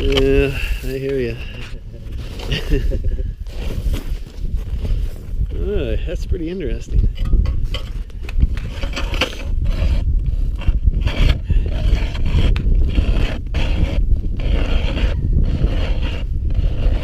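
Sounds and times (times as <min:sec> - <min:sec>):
ice auger scraping through ice: 0:00.0 - 0:04.2, 0:07.7 - 0:17.0.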